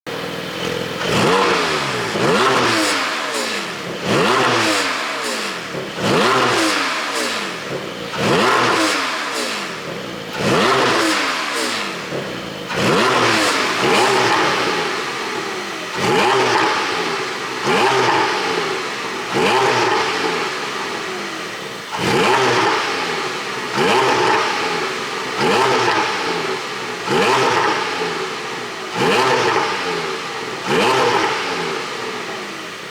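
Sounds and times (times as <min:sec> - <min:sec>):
car engine revving: 0:00.1 - 0:32.9
exhaust pops and crackles: 0:00.5 - 0:21.1.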